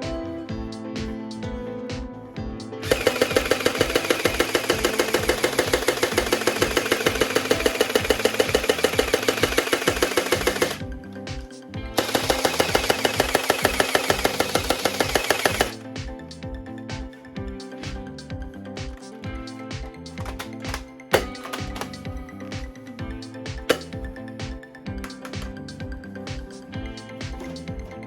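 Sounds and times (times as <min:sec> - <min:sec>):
toy gun rapid-fire effect: 0:02.8 - 0:10.8, 0:12.0 - 0:15.8.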